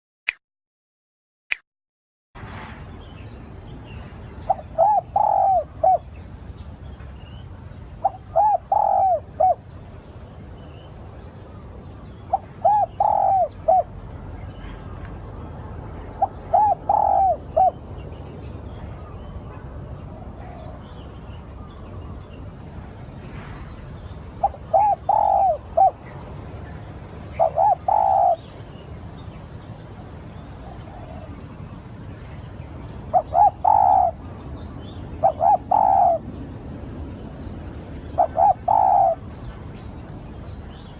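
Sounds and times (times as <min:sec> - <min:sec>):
dove cooing: 0:04.5 - 0:06.0, 0:08.0 - 0:09.6, 0:12.3 - 0:13.9, 0:16.2 - 0:17.8, 0:24.4 - 0:26.2, 0:26.8 - 0:28.6, 0:30.4 - 0:31.4, 0:33.1 - 0:34.2, 0:35.2 - 0:36.3, 0:38.1 - 0:39.2.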